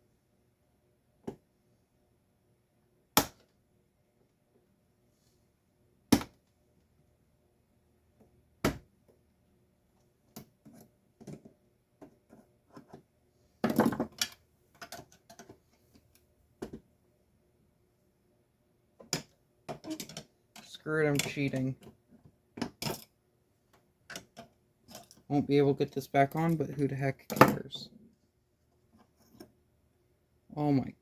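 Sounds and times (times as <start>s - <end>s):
clattering rattle of parts: 13.6s - 15.7s, 19.1s - 21.9s, 24.1s - 25.3s.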